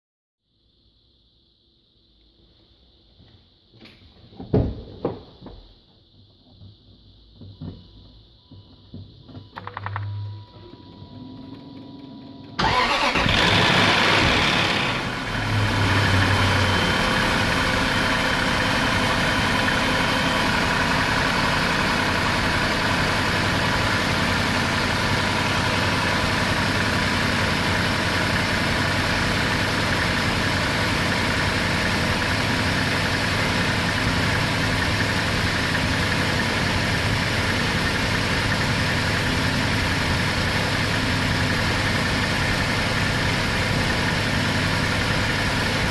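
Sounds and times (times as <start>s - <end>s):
car engine running rough with knock: 13.3s - 45.9s.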